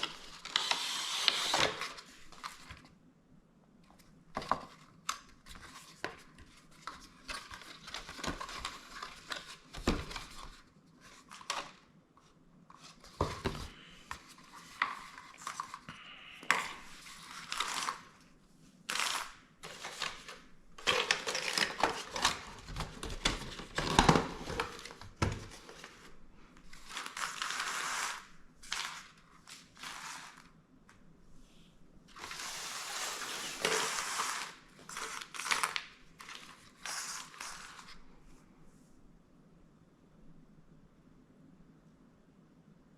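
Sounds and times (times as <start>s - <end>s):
packaging rustling and crinkling: 4.4s - 11.8s, 12.8s - 18.2s, 18.9s - 30.5s, 32.1s - 38.1s.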